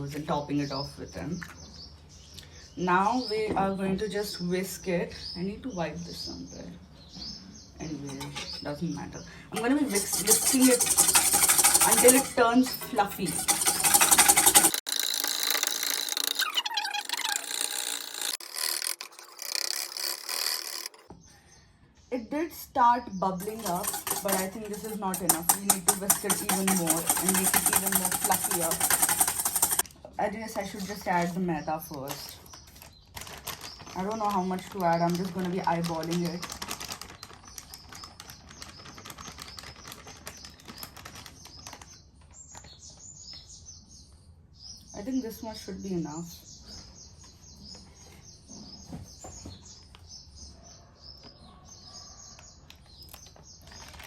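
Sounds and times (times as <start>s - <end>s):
small birds chirping: 0.0s - 14.7s, 21.1s - 54.0s
whisk rattling against bowl: 9.5s - 18.4s, 23.3s - 29.9s, 30.5s - 31.4s, 34.0s - 37.2s.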